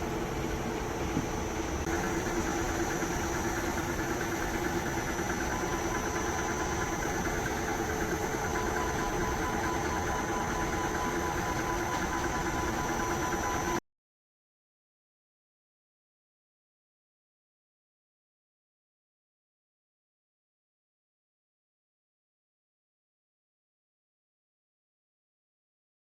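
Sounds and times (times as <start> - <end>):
milling machine hum and whine: 0.0 - 13.8.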